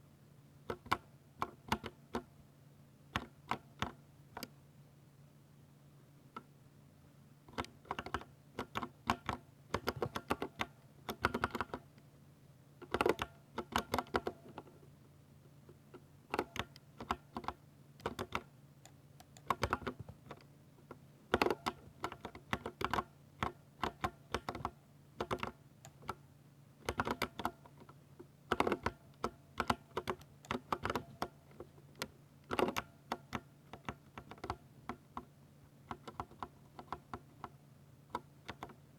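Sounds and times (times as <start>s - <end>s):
faint steady hum: 0.0s - 38.9s
mechanical keyboard typing: 7.5s - 11.9s, 12.8s - 14.4s, 16.3s - 18.5s, 21.3s - 26.2s, 26.8s - 27.8s, 28.5s - 31.4s, 32.0s - 35.3s, 35.9s - 38.8s.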